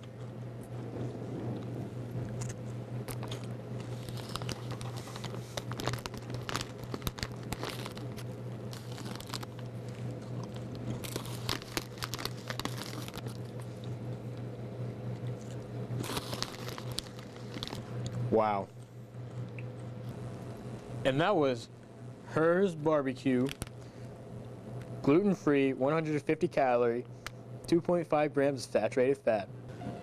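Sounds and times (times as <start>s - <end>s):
steady low hum: 0.0s - 30.0s
person crunching potato chips: 1.4s - 14.2s, 15.2s - 18.2s, 23.4s - 23.8s
bag crinkling: 2.4s - 13.9s, 15.4s - 18.0s.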